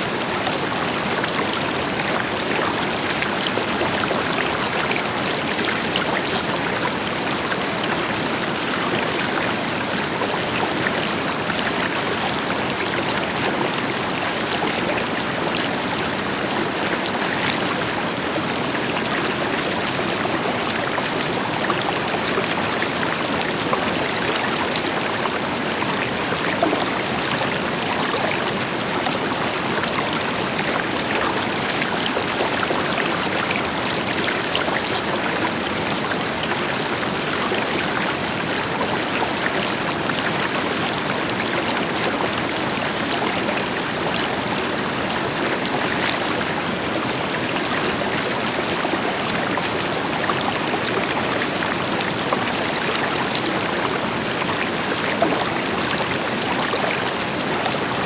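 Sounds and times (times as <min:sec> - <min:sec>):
river flowing over rocks: 0:00.0 - 0:58.0.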